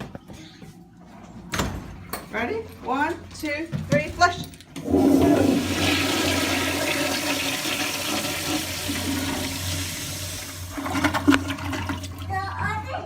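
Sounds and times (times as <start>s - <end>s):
toilet flushing: 4.8s - 12.6s.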